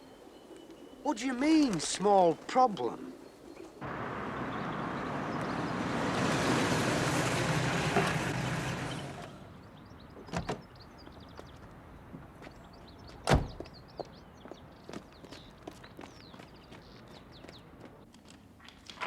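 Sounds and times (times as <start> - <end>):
vehicle passing: 3.8 - 9.8.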